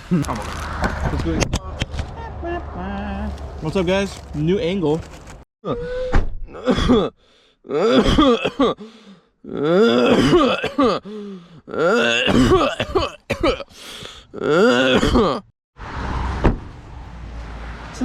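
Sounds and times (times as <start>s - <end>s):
person making wordless vocal sounds: 1.6s - 3.4s, 9.4s - 10.3s, 14.3s - 15.4s.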